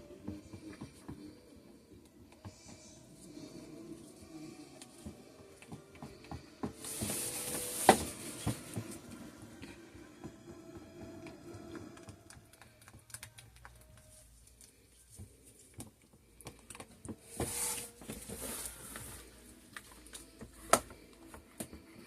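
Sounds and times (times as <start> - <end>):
rustling scrape: 6.8 - 8.7, 17.3 - 19.4.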